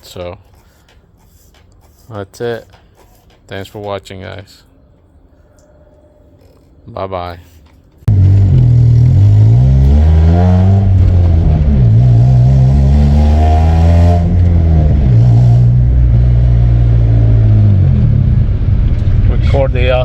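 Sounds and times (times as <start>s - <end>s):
car engine revving: 8.1s - 20.0s.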